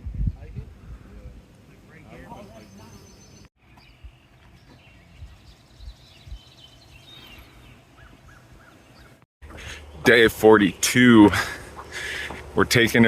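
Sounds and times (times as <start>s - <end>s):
faint bird chirps: 2.3s - 10.0s.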